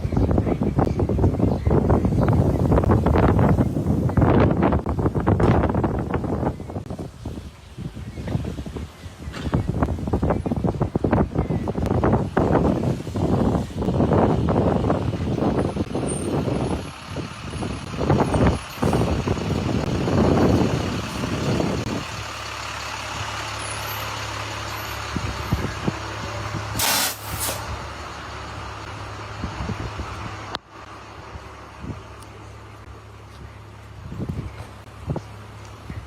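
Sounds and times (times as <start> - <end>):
heavy traffic rumbling: 0.0 - 36.0
short sharp hiss: 26.8 - 27.7.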